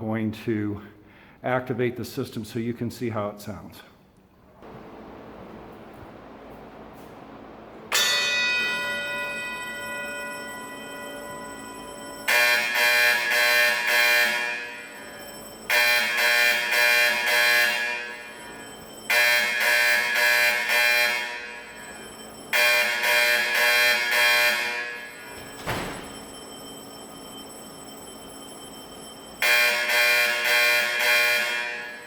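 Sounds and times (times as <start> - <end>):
fire alarm horn blasts: 7.9 - 32.0.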